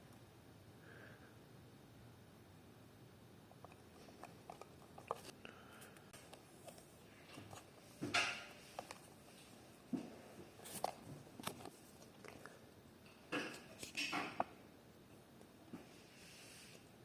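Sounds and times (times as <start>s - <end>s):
packaging clicks and rustles: 10.5s - 12.6s.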